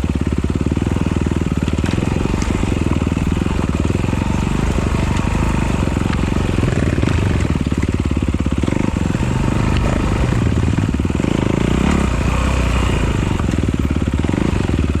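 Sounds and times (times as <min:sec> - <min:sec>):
dirt bike engine running: 0:00.0 - 0:15.0.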